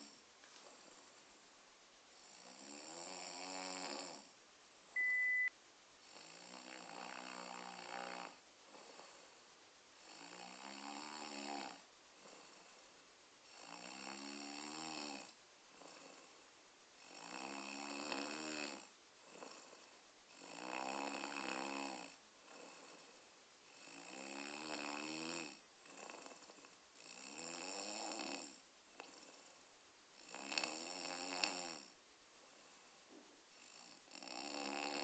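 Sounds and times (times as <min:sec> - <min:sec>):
person snoring loudly: 0:02.2 - 0:04.3, 0:06.1 - 0:09.3, 0:10.0 - 0:12.8, 0:13.5 - 0:16.4, 0:17.0 - 0:23.1, 0:23.7 - 0:29.3, 0:30.2 - 0:31.9, 0:33.6 - 0:35.0.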